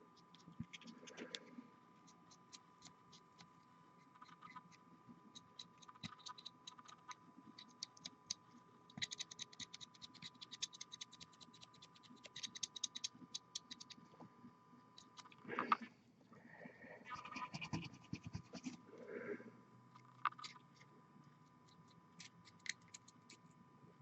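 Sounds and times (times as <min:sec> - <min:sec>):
faint steady high hum: 0:00.0 - 0:24.0
paintbrush bristles scratching plastic: 0:00.1 - 0:07.9, 0:17.1 - 0:18.9.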